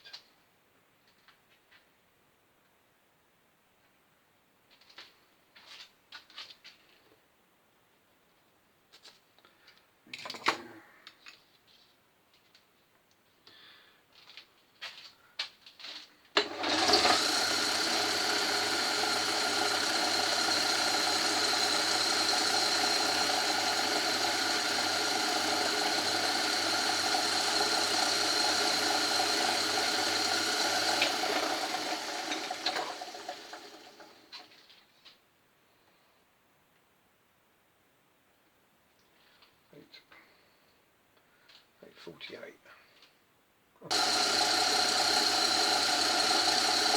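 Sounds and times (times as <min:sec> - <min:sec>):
lathe motor humming: 0:16.4 - 0:34.5, 0:43.9 - 0:46.9.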